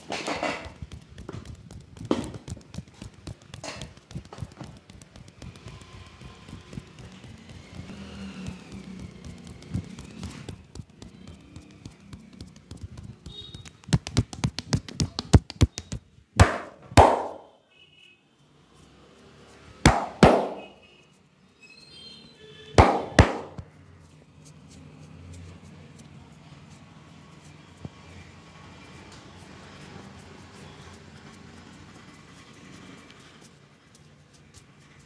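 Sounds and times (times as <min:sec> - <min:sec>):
hands chopping taps: 0:00.0 - 0:17.4, 0:22.8 - 0:23.7
loud hand slaps: 0:13.9 - 0:17.5, 0:19.9 - 0:20.6, 0:22.8 - 0:23.6.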